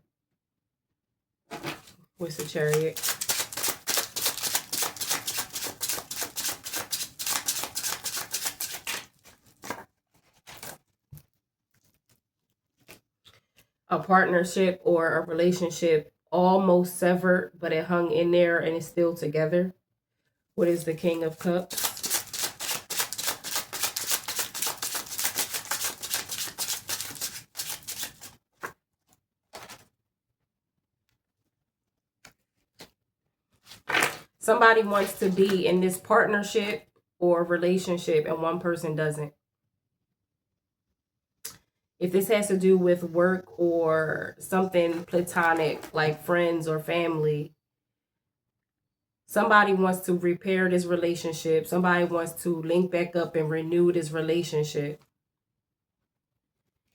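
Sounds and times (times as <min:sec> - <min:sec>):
cards being shuffled: 0:01.5 - 0:10.9, 0:21.6 - 0:29.9, 0:33.6 - 0:35.6.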